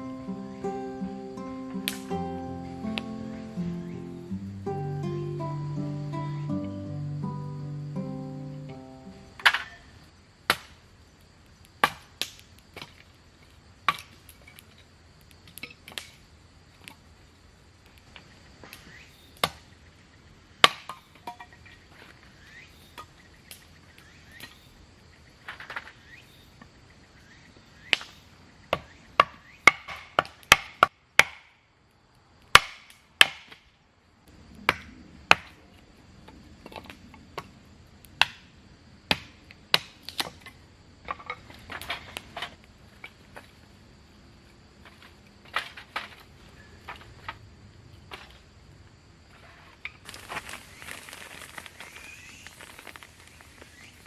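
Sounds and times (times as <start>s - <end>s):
high insect trill: 0.0s - 29.9s, 34.3s - 54.0s
wood being chopped: 10.5s - 10.8s, 11.8s - 12.9s, 20.6s - 21.0s, 28.7s - 31.6s, 32.5s - 33.6s, 34.7s - 35.6s, 38.2s - 38.4s, 39.1s - 40.4s.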